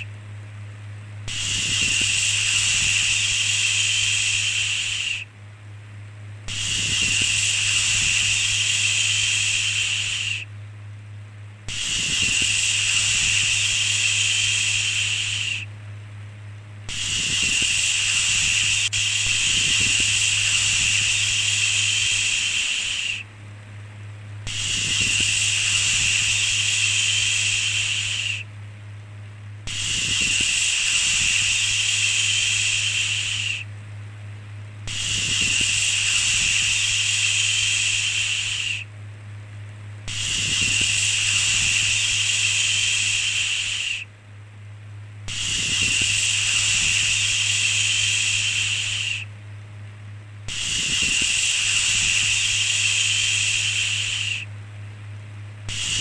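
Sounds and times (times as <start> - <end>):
steady low hum: 0.0 - 56.0
person shushing: 11.7 - 15.6, 16.9 - 23.2, 34.9 - 38.8, 50.5 - 54.5.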